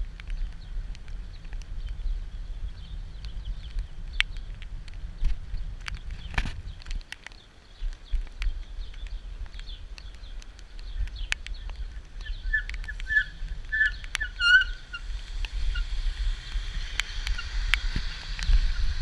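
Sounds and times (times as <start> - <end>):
small bird chirping: 5.5 - 16.0
rain falling: 6.8 - 19.0
low rumble: 11.8 - 19.0.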